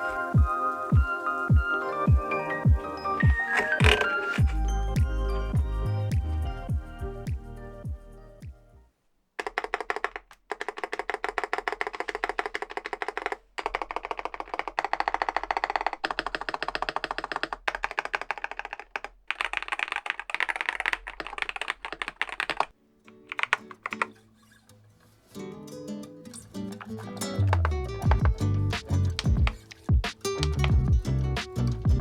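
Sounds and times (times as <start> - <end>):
fast typing on mechanical keyboard: 3.3 - 4.6, 9.4 - 24.2.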